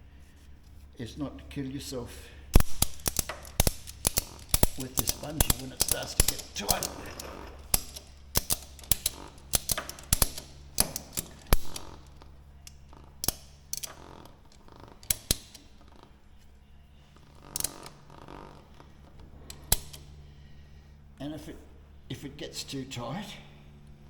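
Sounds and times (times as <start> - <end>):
ratchet strap clicking: 2.5 - 20.5
scraping: 2.6 - 20.6.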